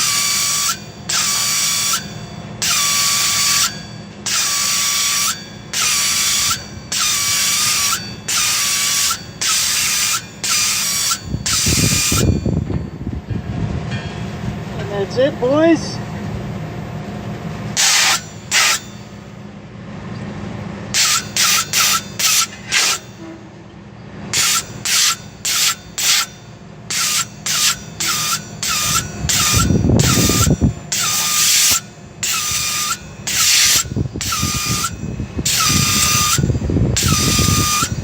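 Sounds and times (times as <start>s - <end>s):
steady low hum: 0.0s - 38.0s
air nozzle hissing blasts: 17.8s - 18.9s, 20.9s - 23.1s, 24.3s - 26.3s, 26.9s - 38.0s.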